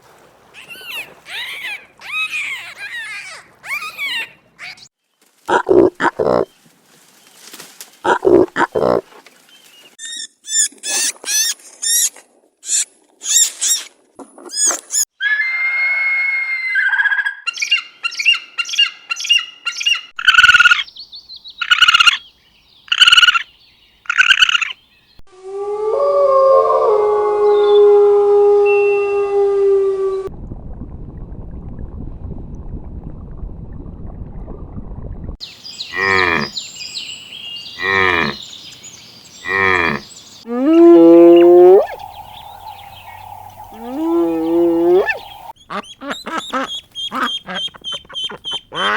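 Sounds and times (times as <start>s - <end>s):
higher animal cries: 0.6s - 4.9s, 39.4s - 46.6s
high chirping calls: 17.5s - 24.8s, 41.3s - 48.9s
low animal calls: 39.4s - 45.6s.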